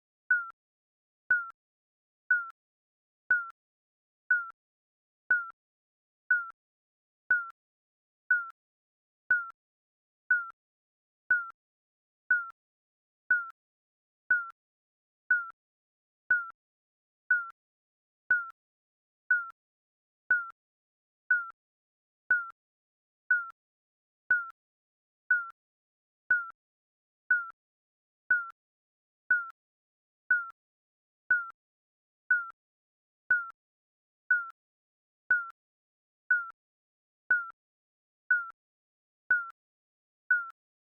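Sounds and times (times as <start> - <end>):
timer beeping: 0.3 - 0.5, 1.3 - 1.5, 2.3 - 2.5, 3.3 - 3.6, 4.3 - 4.5, 5.3 - 5.6, 6.3 - 6.5, 7.3 - 7.5, 8.3 - 8.5, 9.3 - 9.6, 10.3 - 10.6, 11.3 - 11.6, 12.3 - 12.6, 13.3 - 13.5, 14.3 - 14.6, 15.3 - 15.6, 16.3 - 16.5, 17.3 - 17.5, 18.3 - 18.5, 19.3 - 19.5, 20.3 - 20.5, 21.3 - 21.5, 22.3 - 22.6, 23.3 - 23.5, 24.3 - 24.5, 25.3 - 25.5, 26.3 - 26.5, 27.3 - 27.6, 28.3 - 28.5, 29.3 - 29.5, 30.3 - 30.6, 31.3 - 31.6, 32.3 - 32.6, 33.3 - 33.6, 34.3 - 34.6, 35.3 - 35.6, 36.3 - 36.6, 37.3 - 37.6, 38.3 - 38.6, 39.3 - 39.6, 40.3 - 40.6.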